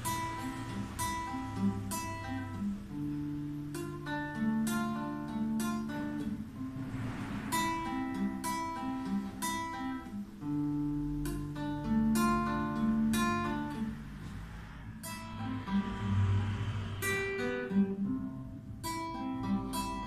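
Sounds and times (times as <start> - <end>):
acoustic guitar chords: 0.0 - 20.0.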